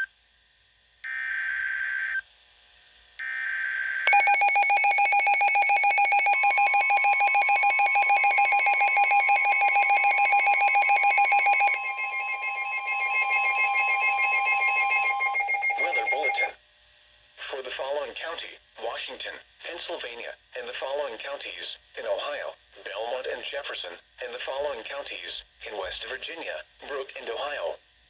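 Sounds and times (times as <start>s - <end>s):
two-tone alarm: 4.1s - 16.5s.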